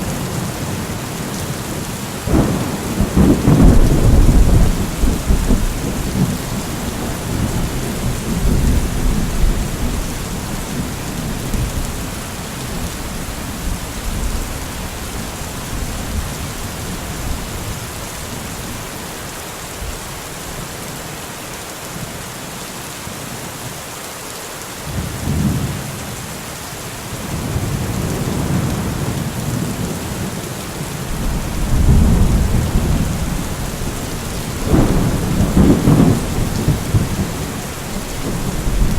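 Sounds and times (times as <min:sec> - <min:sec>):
thunder rumbling: 0:00.0 - 0:17.5, 0:31.0 - 0:38.9
heavy rain: 0:00.0 - 0:38.9.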